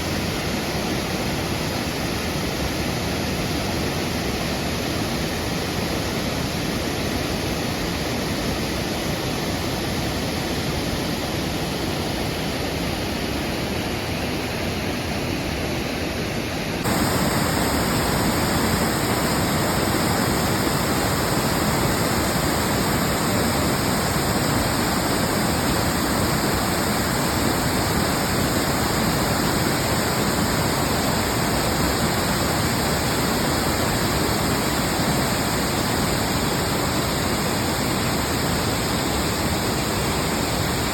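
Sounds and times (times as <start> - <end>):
waterfall rushing: 16.8 - 40.9.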